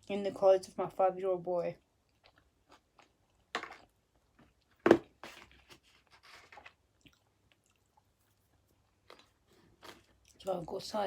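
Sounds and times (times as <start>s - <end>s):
person chewing crunchy crust: 1.8s - 4.8s, 5.4s - 10.5s.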